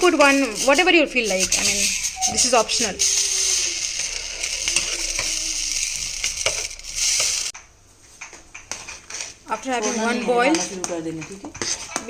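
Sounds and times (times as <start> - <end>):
gravy sizzling in a pan: 0.0 - 7.6.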